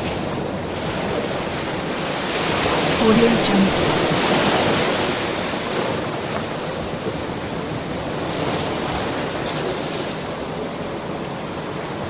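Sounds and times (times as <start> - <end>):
ocean waves washing on shore: 0.0 - 12.0.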